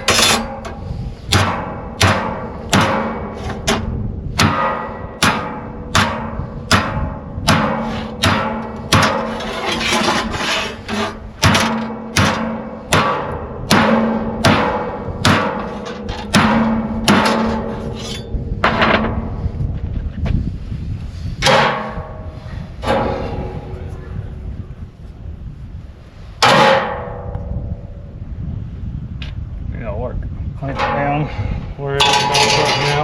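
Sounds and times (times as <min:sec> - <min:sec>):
hammer ringing on steel plate: 0:00.1 - 0:03.8, 0:04.4 - 0:09.3, 0:11.4 - 0:18.2, 0:21.4 - 0:23.7, 0:26.4 - 0:27.4.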